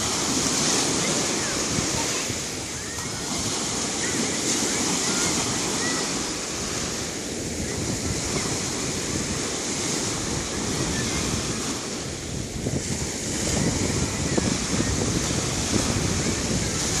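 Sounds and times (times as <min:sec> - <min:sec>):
sea waves washing onto shore: 0:00.0 - 0:17.0
wind noise on microphone: 0:00.0 - 0:17.0.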